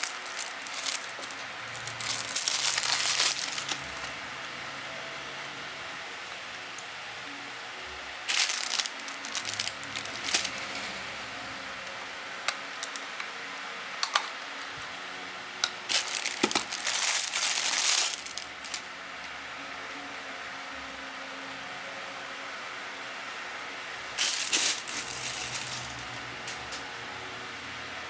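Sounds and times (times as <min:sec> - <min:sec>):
packaging crinkling: 0:00.0 - 0:04.2, 0:08.3 - 0:10.9, 0:15.6 - 0:18.9, 0:24.1 - 0:26.8.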